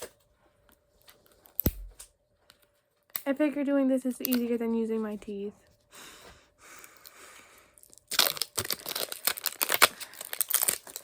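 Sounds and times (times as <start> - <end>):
packaging tearing and crinkling: 7.8 - 11.0.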